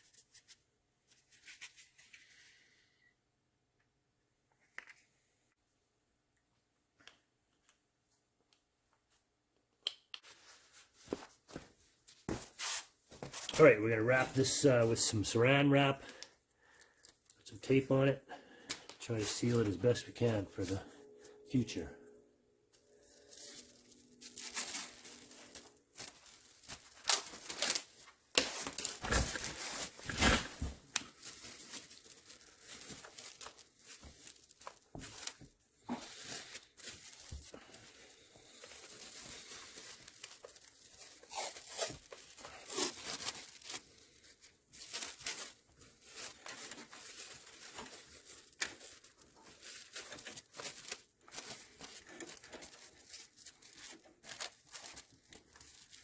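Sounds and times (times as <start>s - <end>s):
plastic cling wrap crinkling: 12.6s - 22.2s, 22.8s - 56.0s
adhesive tape pulled and torn: 30.0s - 31.0s, 41.1s - 43.4s.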